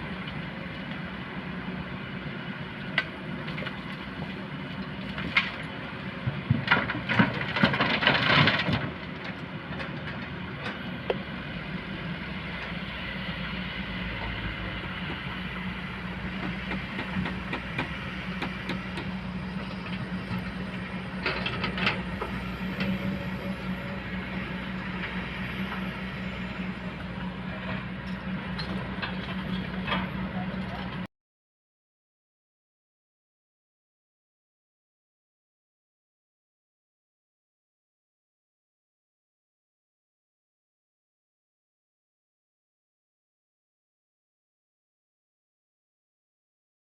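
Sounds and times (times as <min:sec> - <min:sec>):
excavator diesel engine running: 0:00.0 - 0:31.1.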